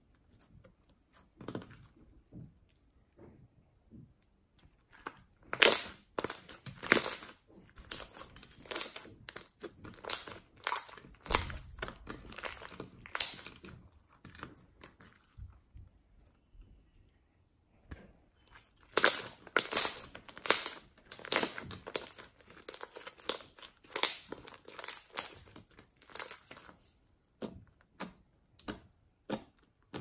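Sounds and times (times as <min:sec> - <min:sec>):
slime squishing and popping: 0:04.9 - 0:15.4, 0:18.5 - 0:30.0.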